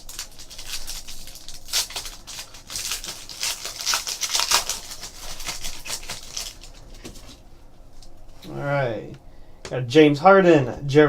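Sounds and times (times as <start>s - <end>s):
foil wrappers crinkling: 0.0s - 8.3s.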